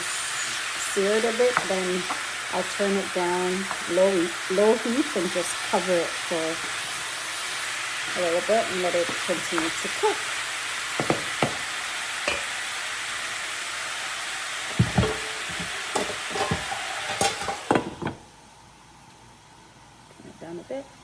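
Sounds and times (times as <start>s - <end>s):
chicken sizzling: 0.0s - 19.2s
utensil knocking and scraping: 14.7s - 18.2s.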